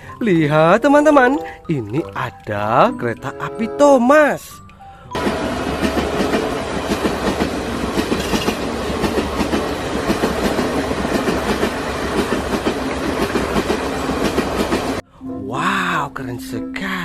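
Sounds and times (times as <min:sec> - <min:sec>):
train rumble: 0:05.2 - 0:15.0
train wheels clickety-clack: 0:05.2 - 0:15.0.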